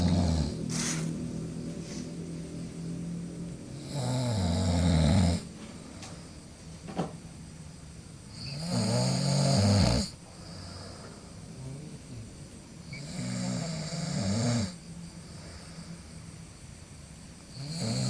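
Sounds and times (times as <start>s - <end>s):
person snoring: 0.0s - 1.1s, 3.8s - 5.5s, 8.4s - 11.0s, 13.0s - 14.8s, 17.6s - 18.0s.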